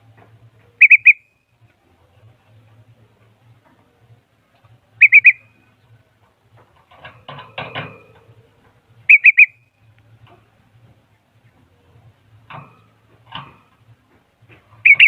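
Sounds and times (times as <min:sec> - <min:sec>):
bird whistled notes: 0:00.8 - 0:01.4, 0:05.0 - 0:05.6, 0:09.1 - 0:09.8
harsh rustling bird chatter: 0:05.0 - 0:05.5.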